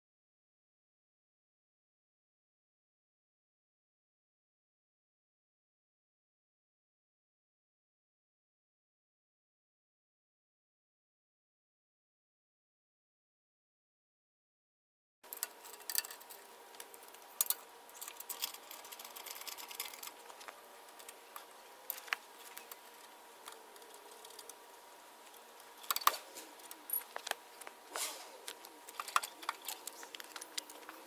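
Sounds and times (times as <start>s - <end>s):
metal tools clicking and clinking: 17.4s - 20.2s.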